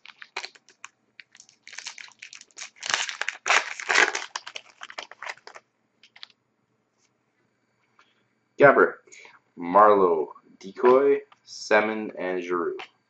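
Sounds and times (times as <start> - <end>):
plastic wrapper crinkling and tearing: 0.0 - 6.3.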